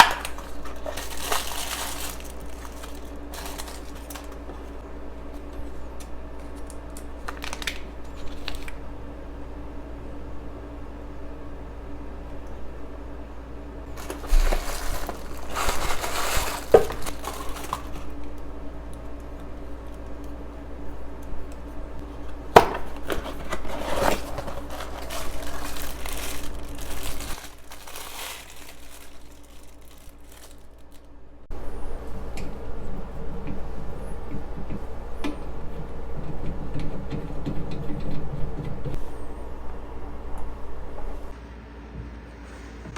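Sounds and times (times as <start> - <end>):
plastic packaging crinkling: 0.0 - 8.8, 13.9 - 18.4, 22.5 - 31.2.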